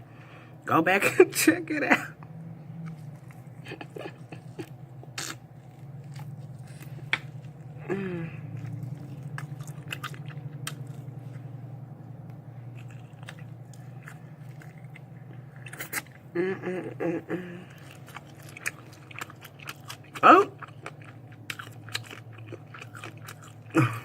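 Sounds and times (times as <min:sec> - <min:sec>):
steady low hum: 0:00.0 - 0:24.0
person chewing food: 0:02.2 - 0:11.8, 0:12.4 - 0:24.0
person humming: 0:07.8 - 0:08.6, 0:16.3 - 0:17.8.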